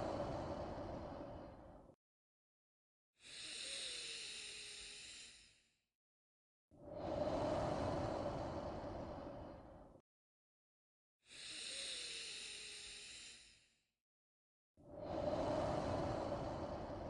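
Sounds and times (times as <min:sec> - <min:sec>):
slow human breathing: 0:00.0 - 0:02.0, 0:03.2 - 0:05.8, 0:06.8 - 0:10.0, 0:11.3 - 0:13.8, 0:14.8 - 0:17.0.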